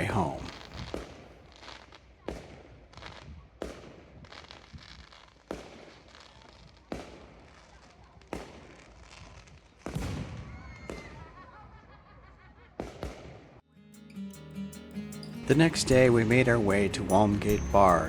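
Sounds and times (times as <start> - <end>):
fireworks bangs and crackle: 0.0 - 11.9, 12.7 - 13.6.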